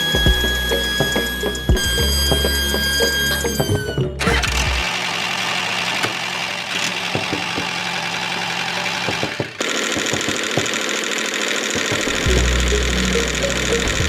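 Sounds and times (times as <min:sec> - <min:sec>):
motor running: 0:04.2 - 0:14.0.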